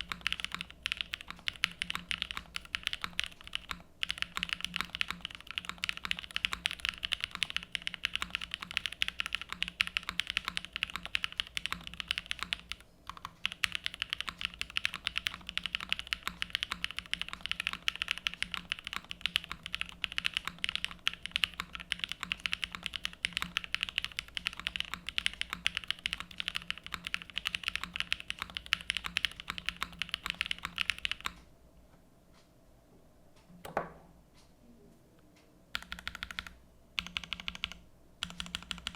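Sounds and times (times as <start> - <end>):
mechanical keyboard typing: 0.0 - 31.4, 35.8 - 38.9.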